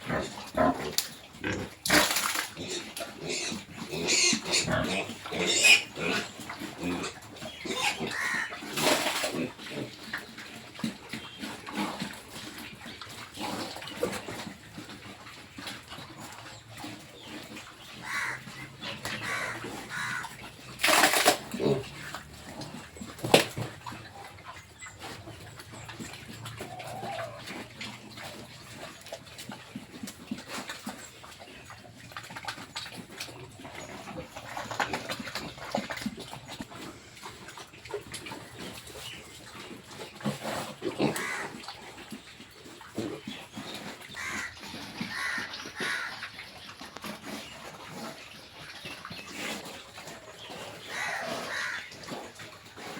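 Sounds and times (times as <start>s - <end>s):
pig squealing: 0.0s - 10.0s, 18.0s - 22.8s, 26.6s - 28.1s, 40.6s - 41.7s, 44.1s - 46.5s, 50.8s - 52.4s
pigs grunting: 0.0s - 52.9s.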